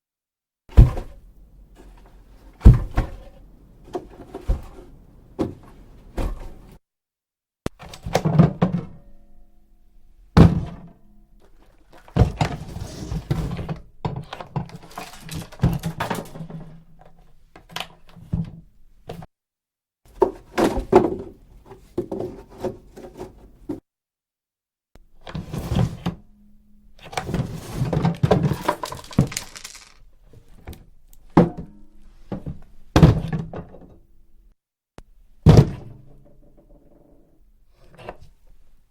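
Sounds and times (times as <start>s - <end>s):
heavy wooden thuds and knocks: 2.6s - 6.6s
wooden box scraping: 28.5s - 30.0s.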